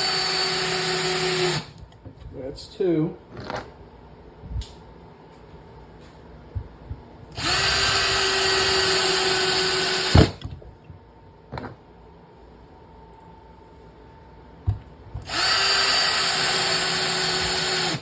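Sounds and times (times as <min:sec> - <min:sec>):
drill motor running: 0:00.0 - 0:01.8, 0:07.3 - 0:10.4, 0:15.2 - 0:18.0.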